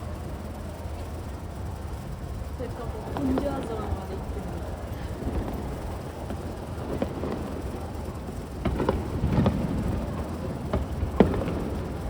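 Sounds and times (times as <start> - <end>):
fireworks bangs and crackles: 3.1 - 12.0.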